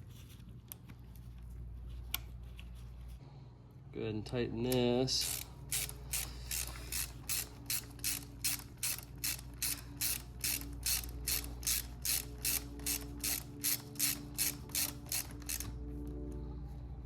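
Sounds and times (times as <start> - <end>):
ratchet wrench clicking: 5.2 - 15.8.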